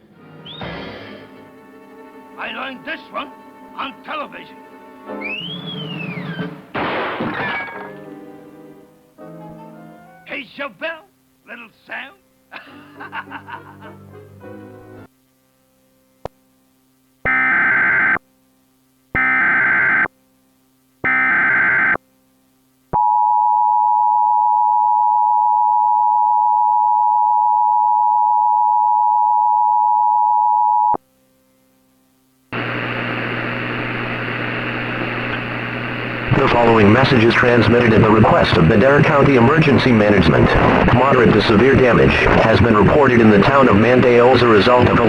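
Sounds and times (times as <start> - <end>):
screeching digital data bursts: 17.3 - 18.2, 19.2 - 20.1, 21.1 - 22.0
steady hiss: 31.2 - 45.0.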